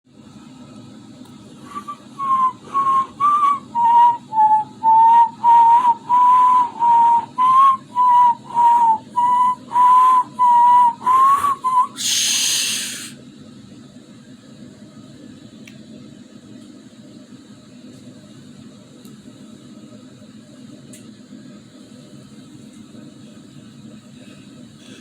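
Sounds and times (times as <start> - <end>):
long hissing breath: 1.6 - 3.5, 9.8 - 10.3, 11.0 - 13.2, 24.1 - 25.0
whistling snore: 1.6 - 13.2.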